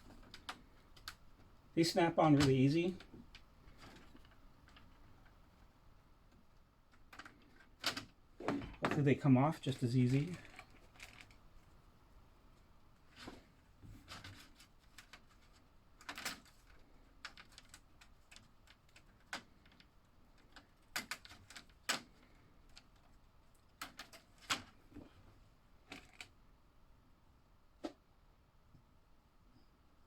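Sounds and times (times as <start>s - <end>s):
plastic clicks and clacks: 14.0s - 23.1s.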